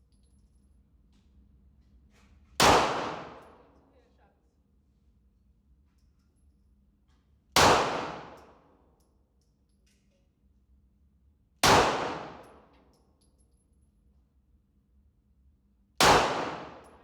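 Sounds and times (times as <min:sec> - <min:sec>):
gunshots echoing: 0:02.6 - 0:03.5, 0:07.6 - 0:08.4, 0:11.6 - 0:12.5, 0:16.0 - 0:17.0.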